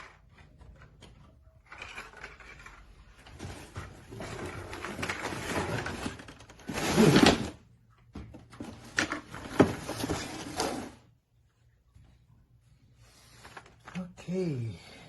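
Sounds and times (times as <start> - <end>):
packaging rustling and scraping: 0.0 - 7.6, 8.5 - 11.1.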